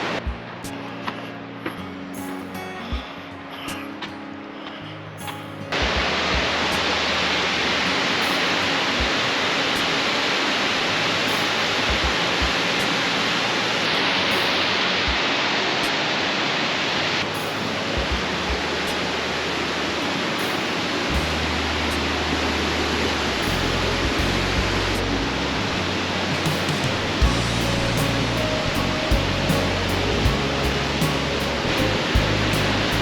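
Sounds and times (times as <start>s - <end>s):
soft background music: 0.0s - 33.0s
creek water rushing: 5.8s - 33.0s.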